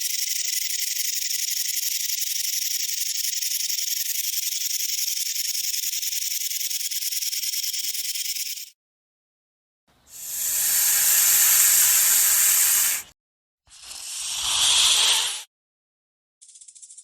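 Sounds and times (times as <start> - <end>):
rattlesnake rattling: 0.0 - 8.7, 10.1 - 13.1, 13.7 - 15.5.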